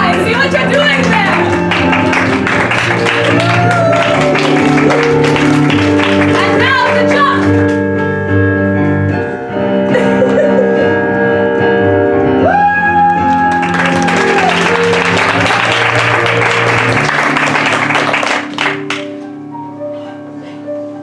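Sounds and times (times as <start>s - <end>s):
audience applause: 0.0s - 7.6s, 13.0s - 19.2s
piano playing sustained chords: 0.0s - 21.0s.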